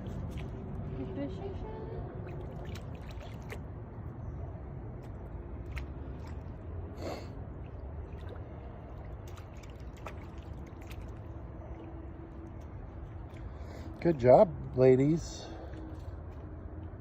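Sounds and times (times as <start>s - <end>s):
stick splashing in shallow water: 0.0s - 1.0s, 2.2s - 3.8s, 5.0s - 6.7s, 7.6s - 14.0s.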